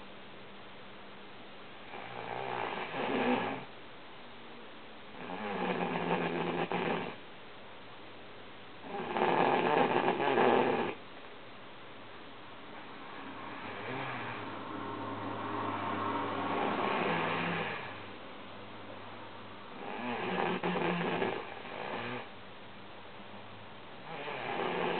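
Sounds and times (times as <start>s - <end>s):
woman snoring: 1.9s - 3.7s, 5.2s - 7.2s, 8.8s - 11.0s, 13.4s - 14.5s, 16.5s - 18.0s, 19.8s - 22.3s, 24.0s - 24.9s.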